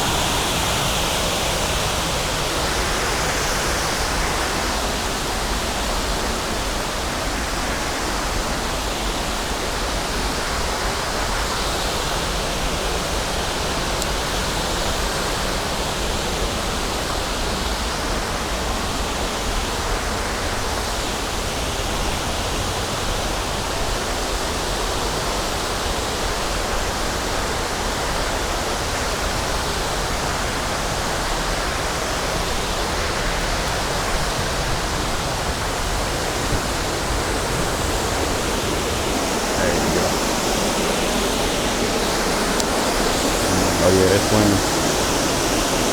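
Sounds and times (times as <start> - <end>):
waterfall rushing: 41.6 - 44.8.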